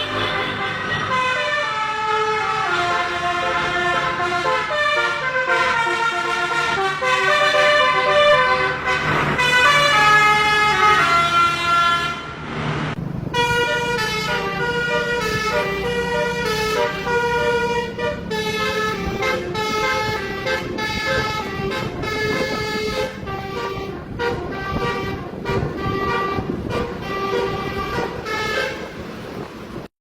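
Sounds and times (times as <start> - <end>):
multi-tone bus horn tune: 0.0 - 29.9.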